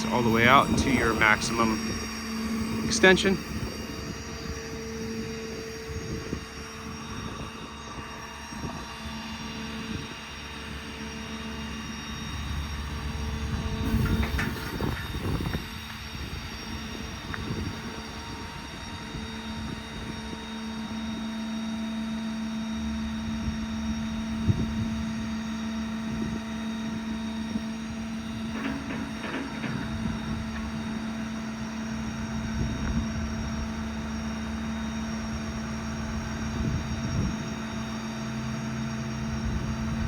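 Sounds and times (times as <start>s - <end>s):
diesel engine running: 0.0s - 40.0s
hydraulic whine: 0.0s - 40.0s
metal knocks and clanks: 28.5s - 31.0s.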